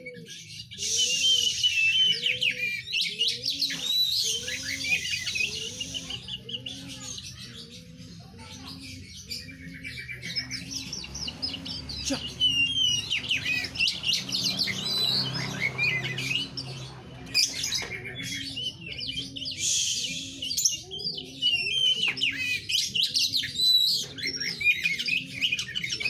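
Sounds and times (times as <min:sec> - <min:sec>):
bird singing chirps and whistles: 0:00.2 - 0:06.8, 0:12.4 - 0:16.6, 0:18.0 - 0:26.0.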